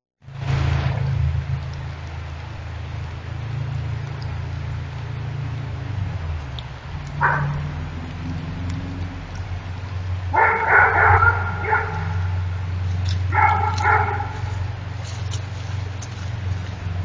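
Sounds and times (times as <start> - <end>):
dog barking: 7.2 - 7.7, 10.3 - 12.5, 13.3 - 14.7.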